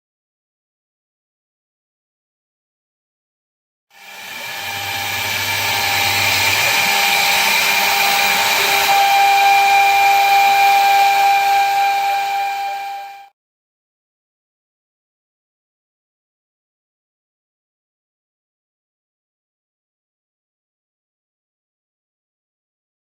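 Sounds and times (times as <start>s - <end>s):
milling machine whine: 4.0s - 13.3s.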